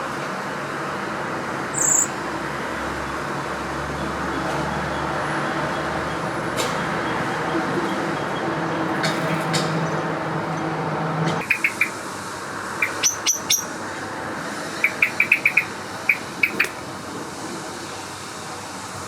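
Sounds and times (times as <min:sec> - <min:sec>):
sharp bird calls: 0:01.7 - 0:02.2, 0:11.4 - 0:16.9.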